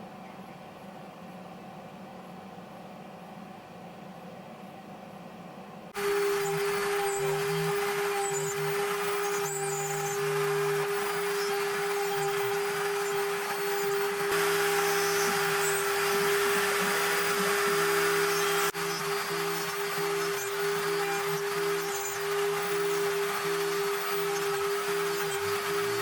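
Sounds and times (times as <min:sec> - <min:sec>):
electric sander on wood: 0:06.0 - 0:26.0.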